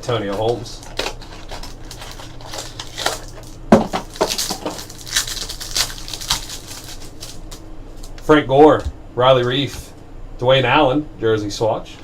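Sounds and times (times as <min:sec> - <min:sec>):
cards and wrappers crinkling: 0:00.2 - 0:08.2.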